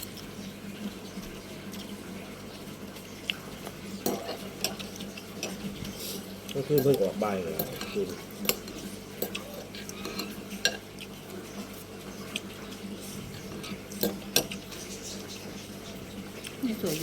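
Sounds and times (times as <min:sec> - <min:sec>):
utensils clinking and scraping: 0:04.0 - 0:10.8.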